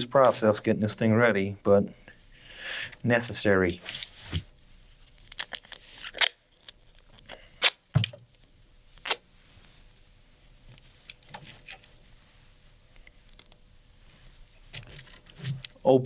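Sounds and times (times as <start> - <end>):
tambourine jingles clinking: 11.3 - 12.0.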